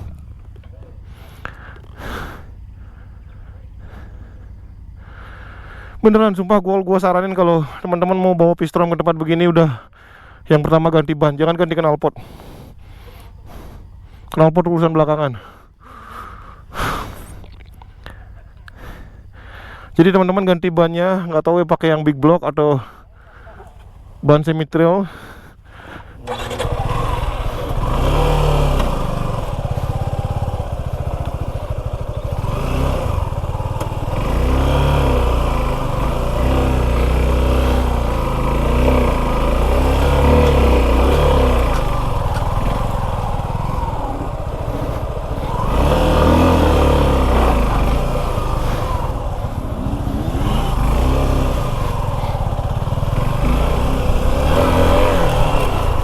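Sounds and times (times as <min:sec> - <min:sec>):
motorcycle engine revving: 0:00.0 - 0:06.2, 0:23.3 - 0:24.2, 0:25.6 - 0:56.0.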